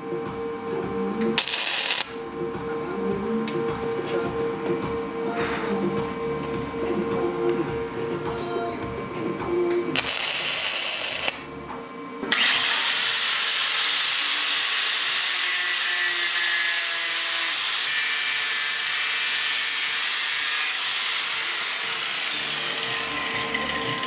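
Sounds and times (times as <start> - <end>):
electric grinder whining: 1.4 - 2.2, 10.0 - 11.4, 12.3 - 24.0.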